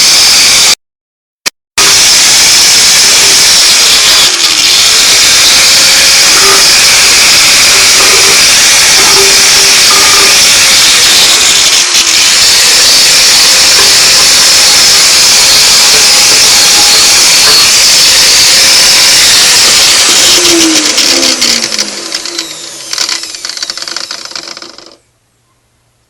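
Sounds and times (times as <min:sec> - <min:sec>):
tool motor whine winding down: 0:01.8 - 0:25.0
abrasive hissing on metal: 0:02.6 - 0:22.5.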